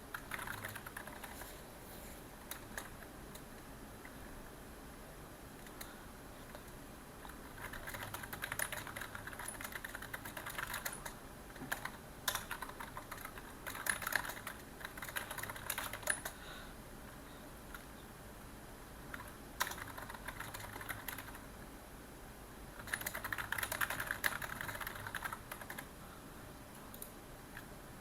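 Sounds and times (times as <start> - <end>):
computer keyboard typing: 0.1 - 1.5, 2.5 - 3.4, 6.5 - 16.4, 19.1 - 21.4, 22.8 - 25.9.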